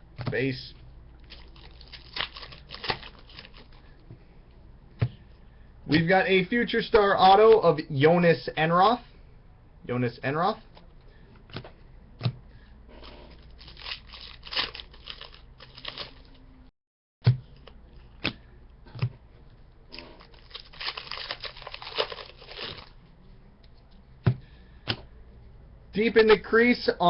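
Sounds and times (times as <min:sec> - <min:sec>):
wrappers tearing and crinkling: 0:01.2 - 0:03.8, 0:13.4 - 0:16.4, 0:20.0 - 0:23.0.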